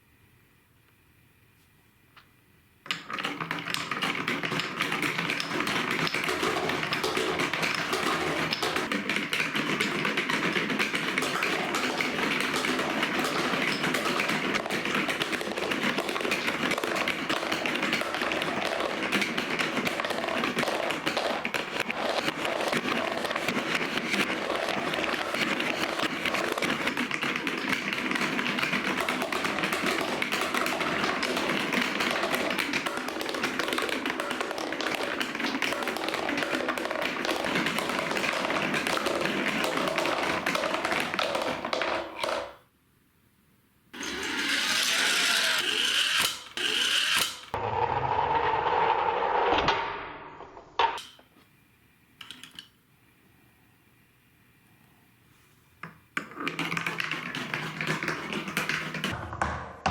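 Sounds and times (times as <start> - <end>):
marbles rattling down plastic track: 3.0 - 42.1, 44.0 - 49.4.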